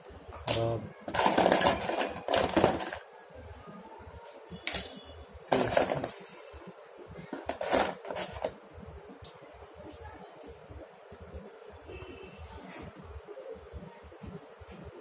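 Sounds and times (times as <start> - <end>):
tools clinking and clattering: 0.0 - 3.1, 4.6 - 6.1, 7.3 - 8.6, 9.2 - 9.5.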